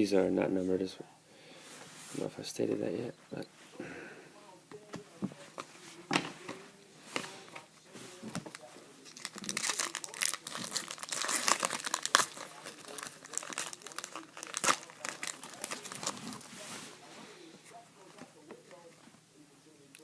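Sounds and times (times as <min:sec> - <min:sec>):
wrapper being torn and crinkled: 0:08.5 - 0:16.5.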